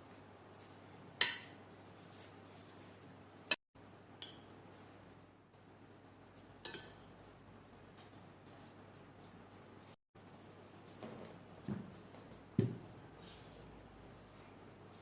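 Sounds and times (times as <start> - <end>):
cutlery clinking against plate: 1.2 - 1.7, 4.2 - 4.6, 6.6 - 7.1.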